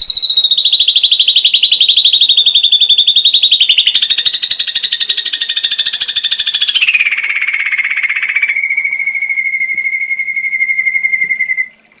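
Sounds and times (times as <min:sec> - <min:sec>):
bird trilling: 0:00.0 - 0:11.8.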